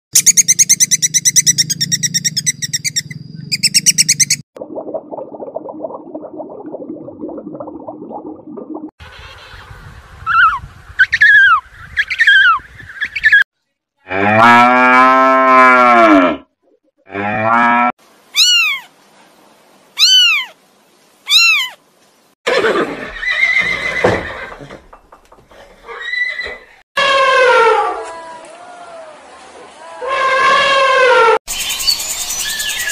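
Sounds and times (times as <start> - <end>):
high falling whistled calls: 0.1 - 4.4, 18.4 - 18.9, 20.0 - 20.6, 21.3 - 21.8, 31.5 - 32.9
cow mooing: 14.1 - 16.5
rough animal cries: 18.3 - 18.9, 20.0 - 20.6, 21.3 - 21.8
short high animal calls: 18.3 - 18.9, 20.0 - 20.6, 21.3 - 21.8.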